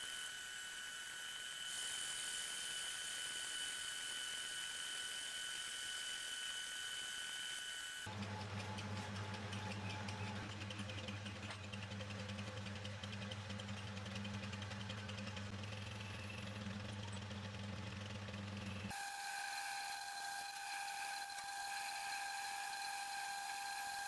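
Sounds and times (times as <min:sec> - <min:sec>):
machine whining: 0:00.0 - 0:24.0
low hum with fast rattle: 0:08.1 - 0:18.9.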